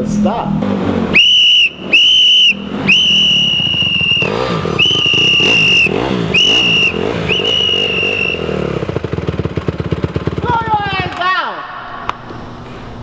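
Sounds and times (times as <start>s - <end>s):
dirt bike engine revving: 0.0s - 11.2s
loud whistle blasts: 1.1s - 8.8s.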